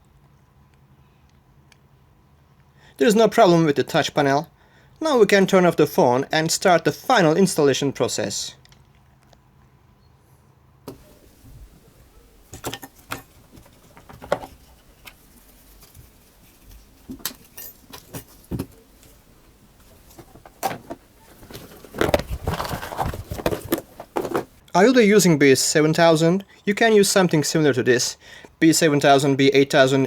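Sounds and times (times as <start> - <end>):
small tools clattering: 10.9 - 24.6.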